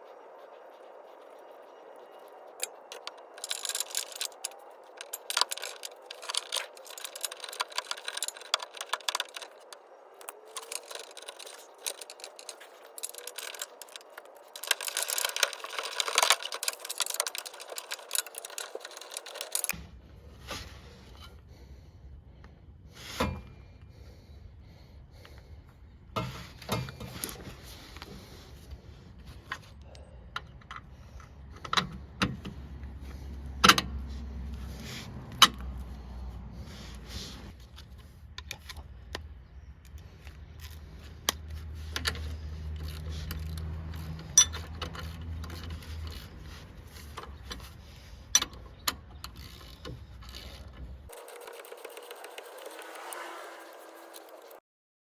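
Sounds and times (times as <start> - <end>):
scraping: 0.9 - 19.8.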